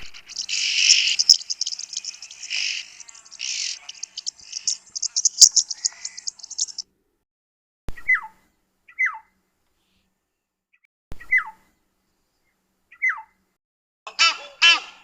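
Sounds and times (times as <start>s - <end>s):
bird whistled calls: 0.2s - 6.8s.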